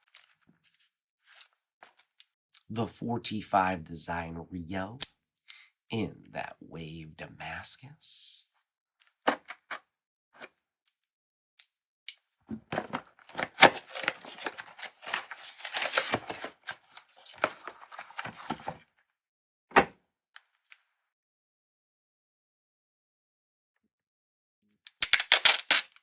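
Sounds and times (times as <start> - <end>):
packaging crinkling and tearing: 12.8 - 18.7, 25.0 - 26.0.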